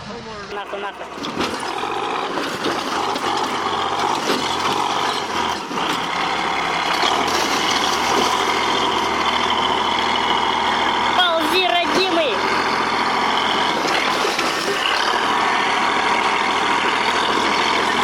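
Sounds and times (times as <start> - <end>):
heavy machine engine running hard: 0.0 - 18.0
mechanical clatter: 0.6 - 9.4, 13.4 - 18.0.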